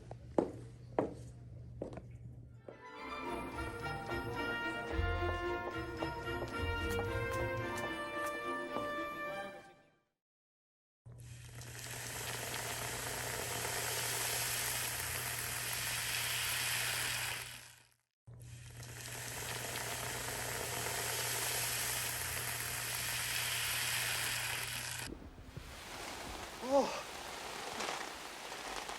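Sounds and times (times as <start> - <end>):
steady sizzling hiss: 18.8 - 28.9.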